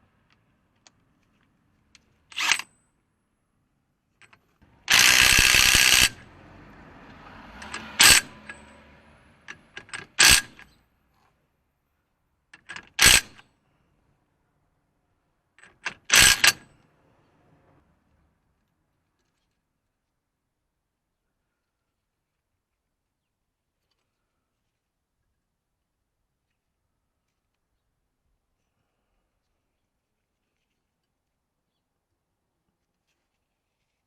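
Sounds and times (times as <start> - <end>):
sharp metallic clicks: 4.2 - 6.3, 7.6 - 8.8, 9.5 - 10.8, 12.6 - 13.4, 15.6 - 16.7
power tool running: 4.7 - 6.3.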